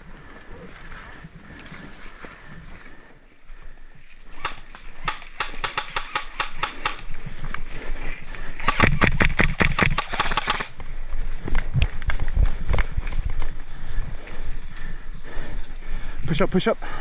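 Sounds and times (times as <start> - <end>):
airsoft gun firing: 4.4 - 7.2, 8.6 - 10.8.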